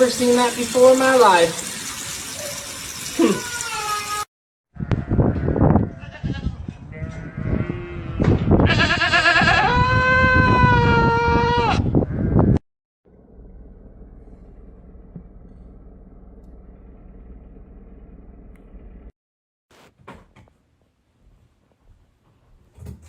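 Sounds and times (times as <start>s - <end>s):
animal bleat: 4.8s - 12.6s.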